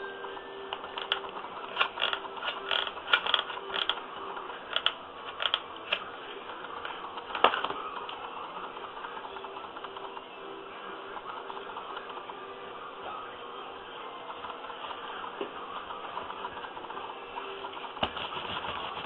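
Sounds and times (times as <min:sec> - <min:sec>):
glue gun clicking and ratcheting: 0:00.8 - 0:04.0, 0:04.7 - 0:06.0.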